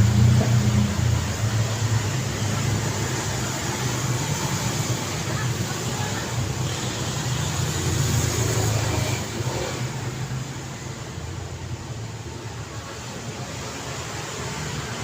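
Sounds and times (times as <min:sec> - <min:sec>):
road traffic hum: 0:00.0 - 0:15.0.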